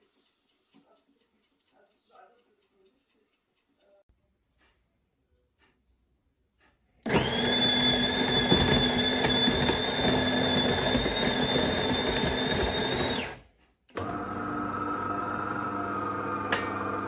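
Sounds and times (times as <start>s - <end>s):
coffee machine whirring: 7.1s - 17.0s.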